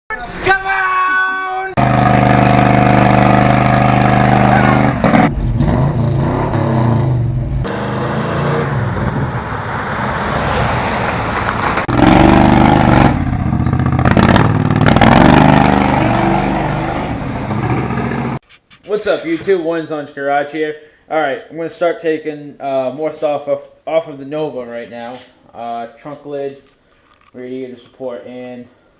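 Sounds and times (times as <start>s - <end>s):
car engine revving: 1.8s - 18.4s.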